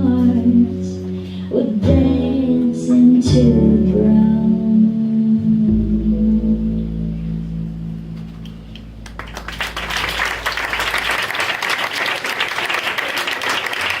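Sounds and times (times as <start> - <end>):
audience applause: 9.0 - 14.0.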